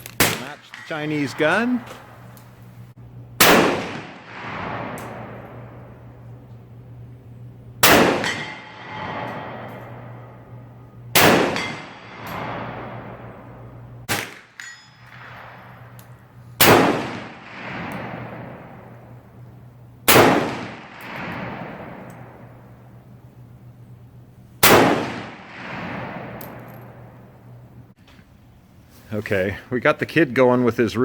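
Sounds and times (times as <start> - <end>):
sharp cracks: 0.0 - 2.7, 3.4 - 5.8, 7.8 - 10.4, 14.1 - 18.7
rifle shots with echoing tail: 0.1 - 2.4, 3.4 - 6.3, 7.8 - 19.4, 20.0 - 23.0, 24.6 - 27.4.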